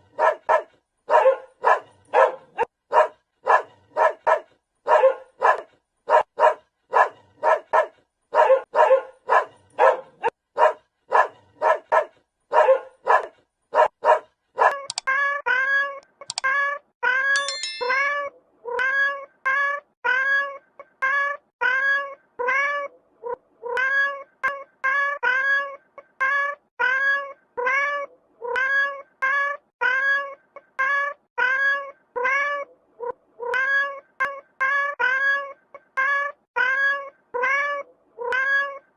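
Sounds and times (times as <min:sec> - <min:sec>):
dog barking: 0:00.0 - 0:14.8
cat meowing: 0:23.6 - 0:38.9.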